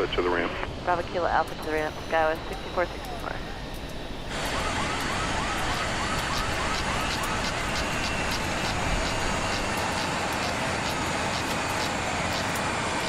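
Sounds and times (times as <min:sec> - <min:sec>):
warbling siren-like chirp: 0:00.8 - 0:13.0
faint regular ticking: 0:01.0 - 0:13.0.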